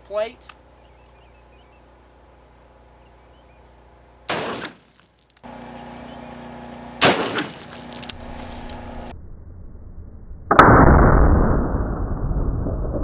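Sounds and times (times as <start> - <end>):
rifle shots: 4.3 - 4.9, 7.0 - 8.1.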